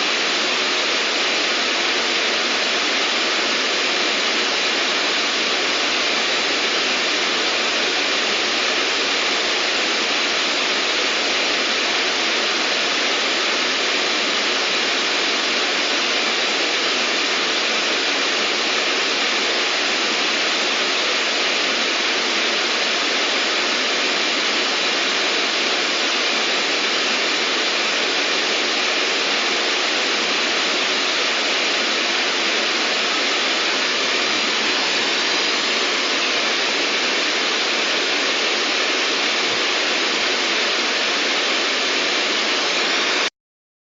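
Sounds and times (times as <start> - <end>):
white noise hiss: 0.0 - 43.3.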